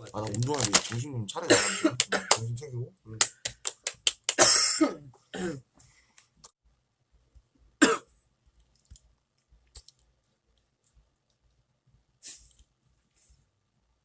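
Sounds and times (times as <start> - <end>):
man clearing throat: 1.4 - 2.5, 4.4 - 5.6, 7.8 - 8.1
man coughing: 1.4 - 2.5, 4.4 - 5.6, 7.8 - 8.1.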